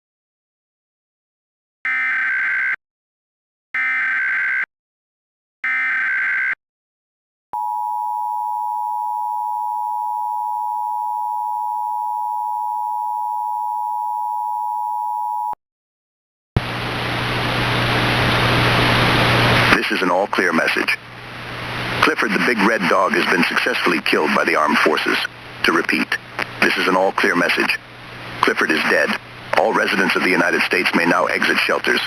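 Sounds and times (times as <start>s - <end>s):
static hiss: 16.6s - 32.0s.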